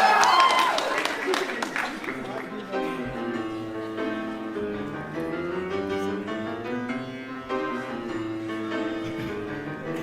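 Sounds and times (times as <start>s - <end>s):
piano playing separate notes: 2.6s - 10.0s.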